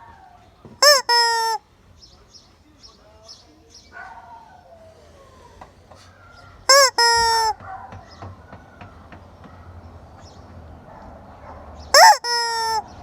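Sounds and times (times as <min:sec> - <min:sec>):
hen squawking: 0:00.8 - 0:01.6, 0:06.6 - 0:07.7, 0:11.9 - 0:13.0.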